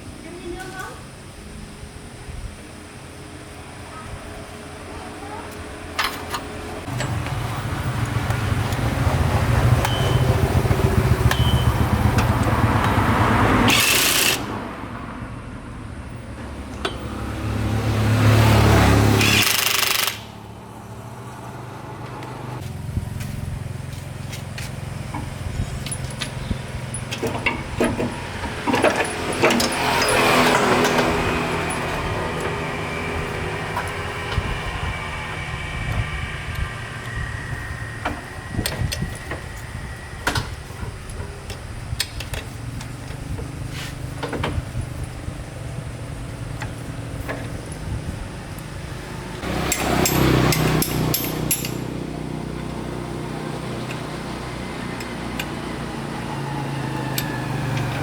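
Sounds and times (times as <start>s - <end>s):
loud rushes of noise: 27.2s - 41.3s.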